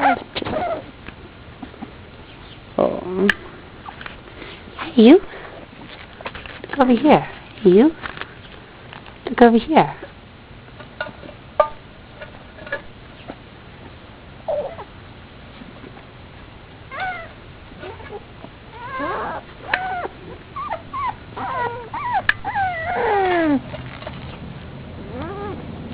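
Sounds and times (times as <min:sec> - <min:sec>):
puppies whimpering and yelping: 0:00.0 - 0:01.0, 0:14.4 - 0:15.0, 0:16.9 - 0:24.4, 0:25.0 - 0:25.7.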